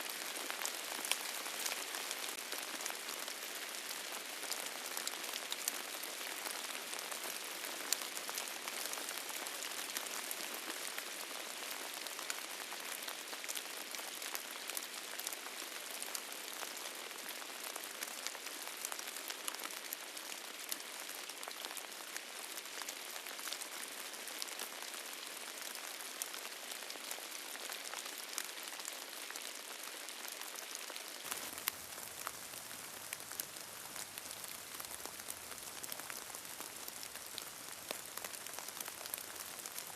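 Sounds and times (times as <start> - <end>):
heavy rain falling: 31.3 - 39.9
raindrops ticking on hard surface: 31.3 - 39.9.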